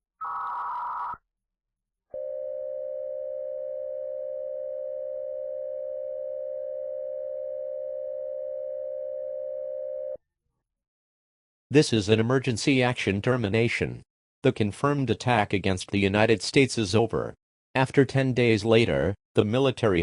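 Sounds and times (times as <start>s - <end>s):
warbling digital data burst: 0.2s - 1.2s.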